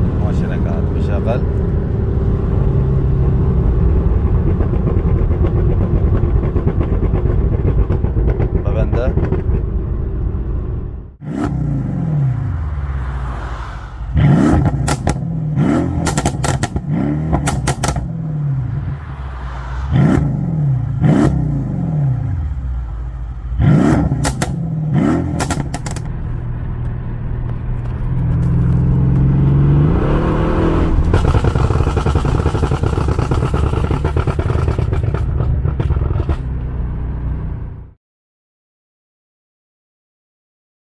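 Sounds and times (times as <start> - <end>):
car engine revving: 0.0 - 37.7
exhaust crackles and pops: 3.8 - 10.8, 14.5 - 15.2, 16.0 - 18.1, 24.0 - 29.6, 30.8 - 36.8.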